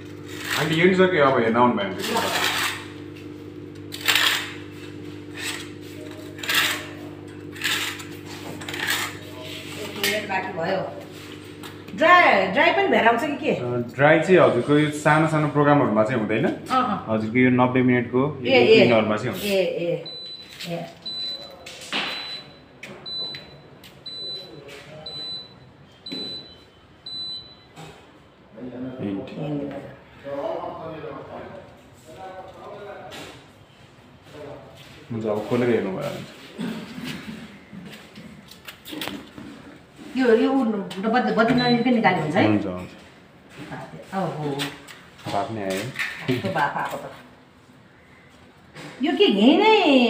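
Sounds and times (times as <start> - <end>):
dishes scraping and rattling: 5.3 - 10.2
dishwasher beeping: 20.0 - 27.8, 41.3 - 42.4.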